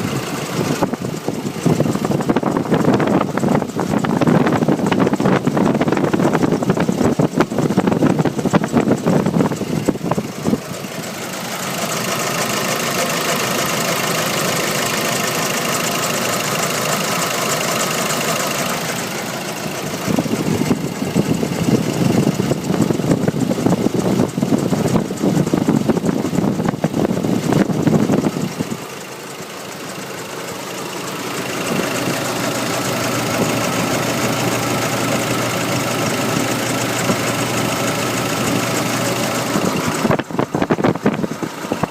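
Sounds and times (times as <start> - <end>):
diesel engine idling: 0.0 - 41.9
engine knocking: 0.0 - 41.9
rumbling noise: 18.4 - 28.8.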